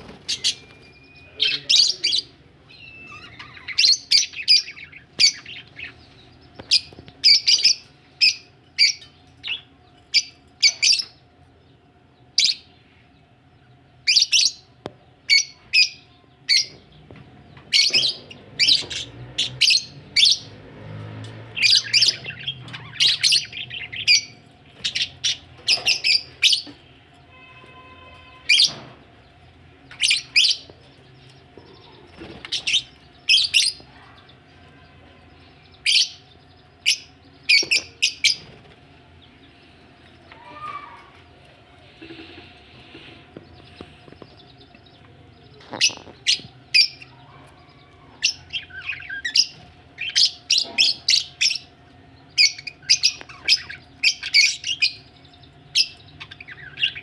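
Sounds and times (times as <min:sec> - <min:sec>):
budgerigars chirping: 0:00.0 - 0:11.2, 0:21.5 - 0:26.8, 0:29.9 - 0:34.3, 0:35.6 - 0:38.8, 0:41.9 - 0:57.0.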